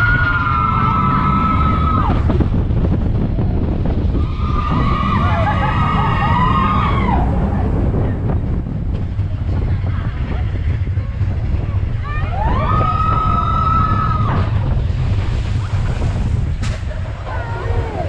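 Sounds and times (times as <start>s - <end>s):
riders crying out: 0.0s - 2.4s, 4.2s - 7.7s
roller coaster rumbling on track: 0.0s - 18.0s.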